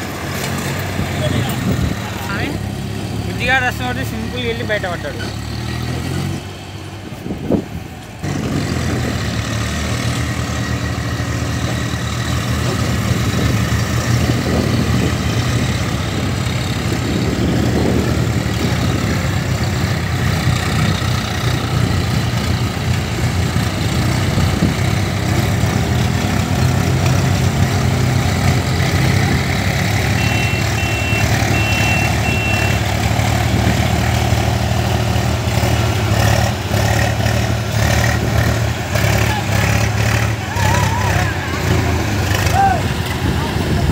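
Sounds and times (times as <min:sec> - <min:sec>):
tractor diesel engine running: 0:00.0 - 0:43.9
short high beeps: 0:30.2 - 0:32.8.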